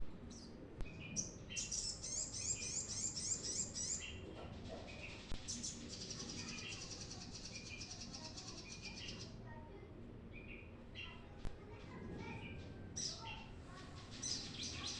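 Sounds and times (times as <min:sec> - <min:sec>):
bird chirping and trilling: 0:00.9 - 0:04.2, 0:12.4 - 0:14.9.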